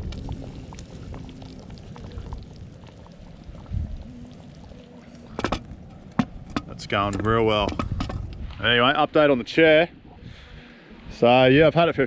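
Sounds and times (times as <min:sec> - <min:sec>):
meat bubbling and sizzling: 0:00.0 - 0:08.5.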